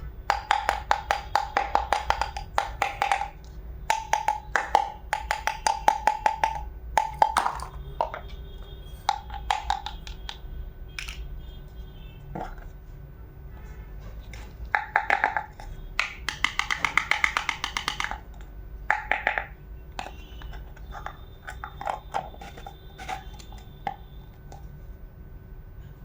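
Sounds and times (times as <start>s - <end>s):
plastic toy pieces clicking: 0.3s - 8.3s, 9.1s - 10.4s, 11.0s - 11.2s, 14.7s - 24.0s.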